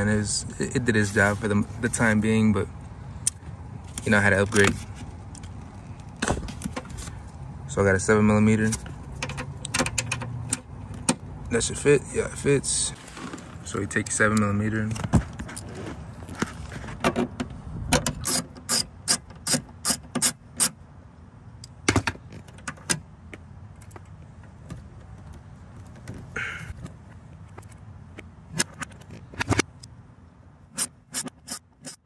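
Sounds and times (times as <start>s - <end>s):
ratchet wrench clicking: 30.8s - 32.0s.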